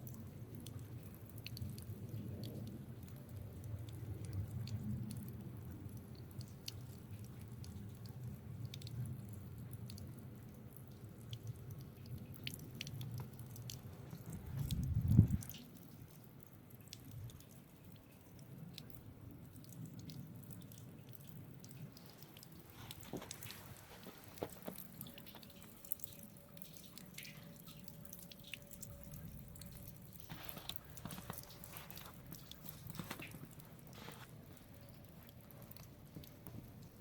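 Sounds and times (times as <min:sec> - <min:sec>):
footsteps crunching in snow: 0:23.0 - 0:24.8, 0:30.3 - 0:34.3.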